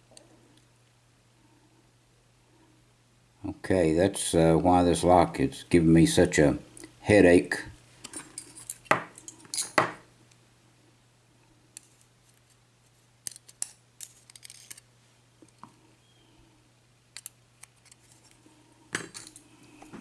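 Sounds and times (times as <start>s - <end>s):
small metal parts clicking: 13.2s - 14.8s.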